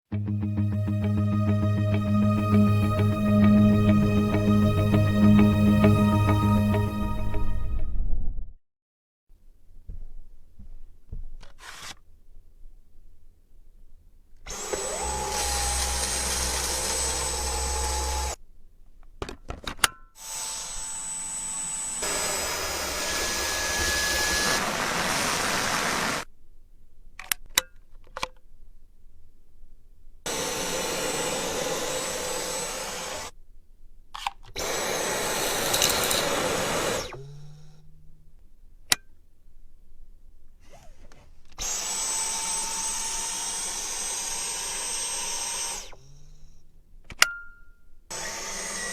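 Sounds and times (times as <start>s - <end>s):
vacuum motor whining: 14.5s - 18.4s, 20.2s - 26.3s, 30.3s - 33.3s, 34.6s - 38.1s, 40.6s - 46.8s, 48.1s - 48.9s.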